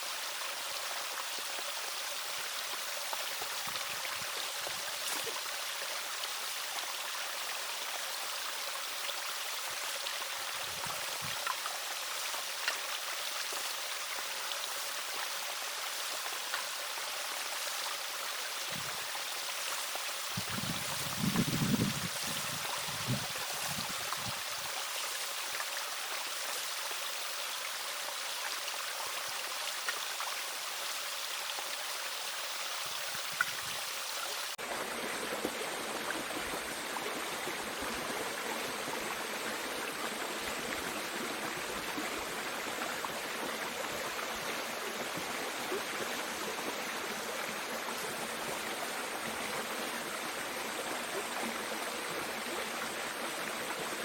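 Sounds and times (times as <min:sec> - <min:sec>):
stream rushing over rocks: 0:00.0 - 0:54.0.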